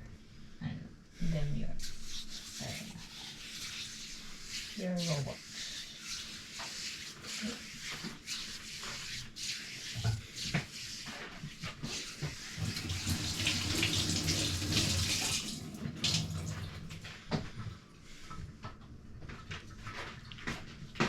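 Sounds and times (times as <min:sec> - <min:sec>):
low hum of pipes: 0:00.0 - 0:21.0
tap water running into sink: 0:12.0 - 0:17.1.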